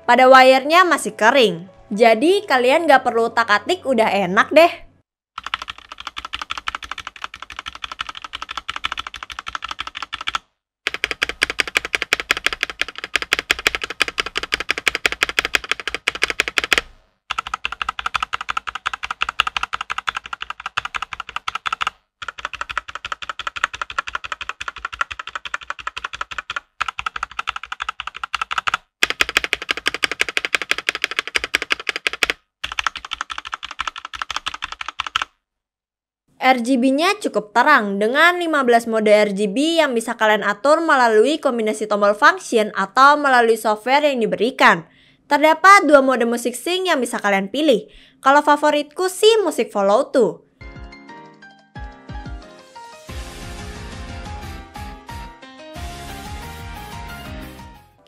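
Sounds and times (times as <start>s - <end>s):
fast mechanical keyboard typing: 5.4s - 35.3s.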